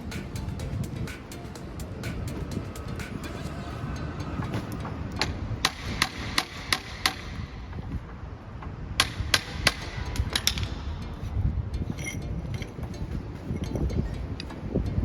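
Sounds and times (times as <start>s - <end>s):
hammer strikes: 4.4s - 7.8s, 8.6s - 10.8s.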